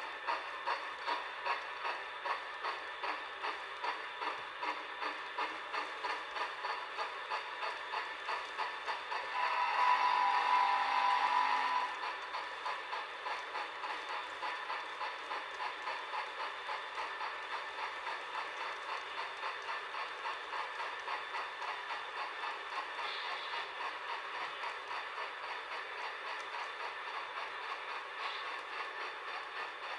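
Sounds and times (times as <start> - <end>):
model locomotive steam chuffing: 0.0 - 29.9
model locomotive whistle: 9.3 - 12.2.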